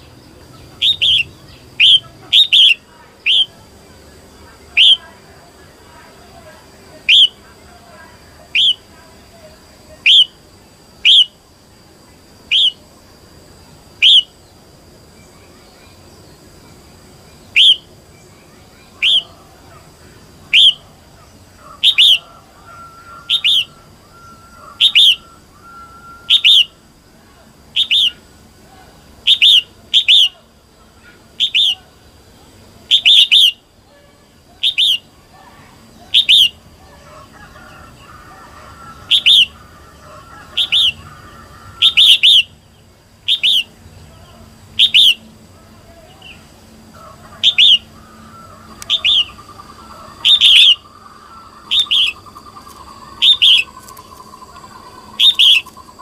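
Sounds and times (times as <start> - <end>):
bird calling sharp notes: 0.0 - 3.6, 4.5 - 5.2, 7.0 - 7.6, 8.5 - 9.0, 10.0 - 10.4, 11.0 - 11.4, 12.5 - 12.8, 14.0 - 14.4, 17.5 - 17.9, 18.8 - 26.9, 27.7 - 28.3, 29.2 - 31.9, 32.9 - 33.6, 34.5 - 35.2, 35.8 - 42.6, 43.2 - 43.8, 44.4 - 56.0.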